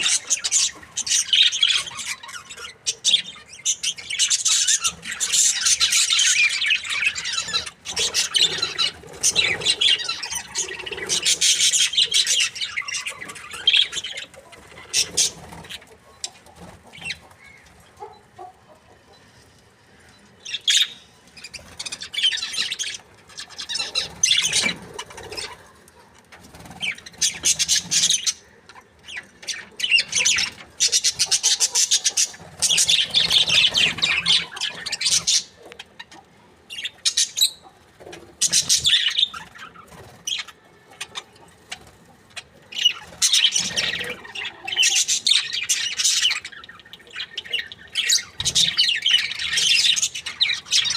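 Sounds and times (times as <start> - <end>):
budgerigars chirping and chattering: 0.0 - 19.4, 20.0 - 50.9.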